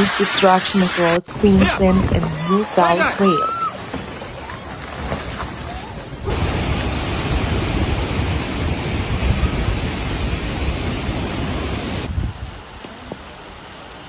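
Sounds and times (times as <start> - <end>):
heavy rain: 6.0 - 14.0
deep storm rumble: 6.2 - 12.5
wind rushing: 6.3 - 12.6.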